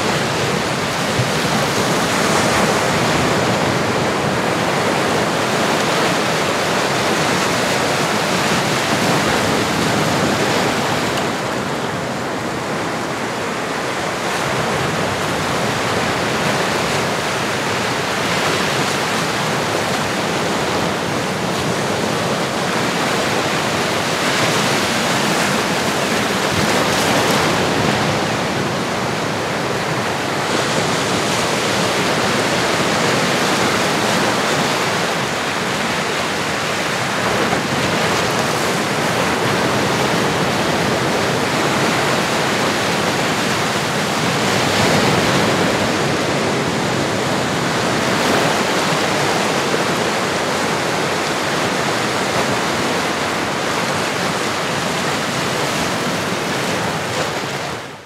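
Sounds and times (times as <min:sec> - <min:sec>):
ocean waves breaking: 0:00.0 - 0:58.0.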